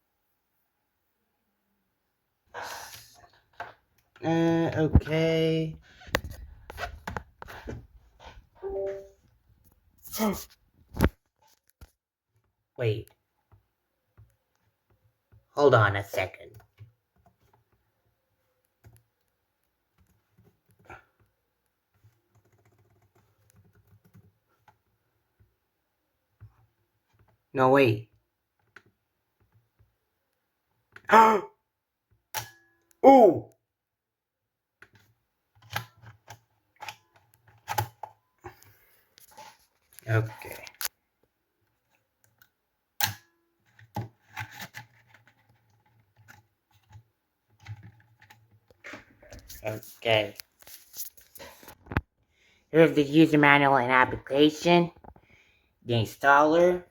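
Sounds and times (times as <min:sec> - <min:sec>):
small rapid ticks: 0:22.3 - 0:24.3.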